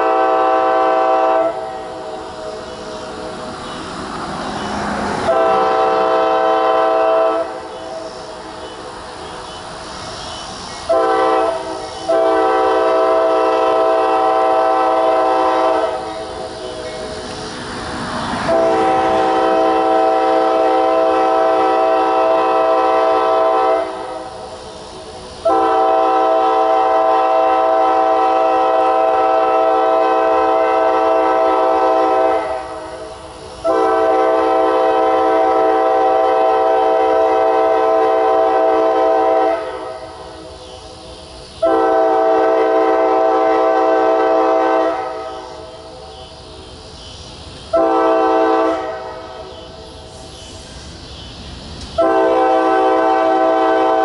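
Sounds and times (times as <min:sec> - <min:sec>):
locomotive air horn blasts: 0:00.0 - 0:02.0, 0:05.3 - 0:08.1, 0:10.9 - 0:16.2, 0:18.5 - 0:24.4, 0:25.4 - 0:32.8, 0:33.6 - 0:40.2, 0:41.6 - 0:45.7, 0:47.7 - 0:49.4, 0:52.0 - 0:54.0
passing train rush: 0:00.0 - 0:54.0.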